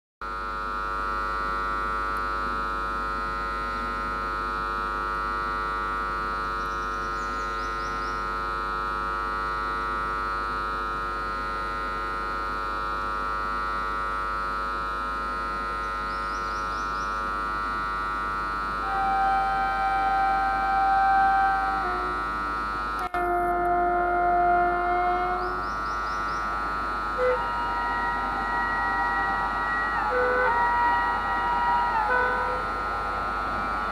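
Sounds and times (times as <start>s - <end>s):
steady multi-tone hum: 0.2s - 33.9s
locomotive horn blast: 17.3s - 33.9s.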